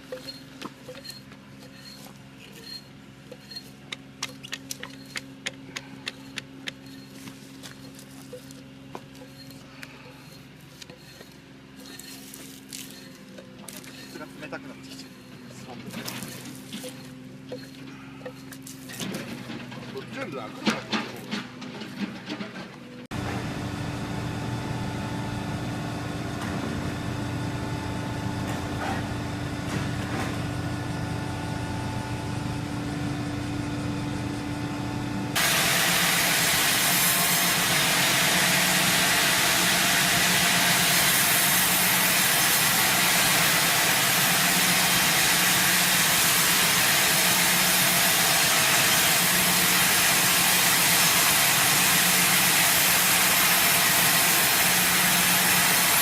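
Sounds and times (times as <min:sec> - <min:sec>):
machinery humming: 0:00.0 - 0:56.0
hissing machine noise: 0:23.0 - 0:56.0.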